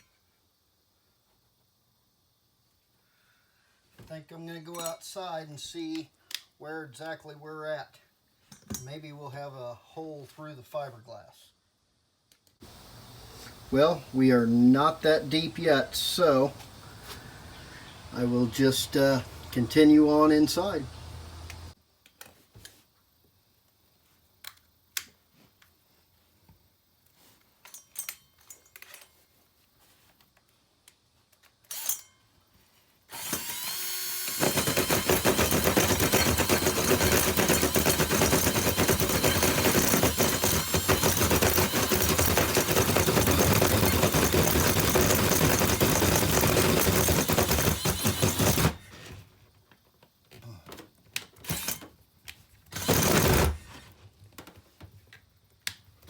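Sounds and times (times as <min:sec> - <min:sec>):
power drill boring through wall: 0:33.1 - 0:49.2, 0:51.4 - 0:51.8, 0:52.7 - 0:53.8.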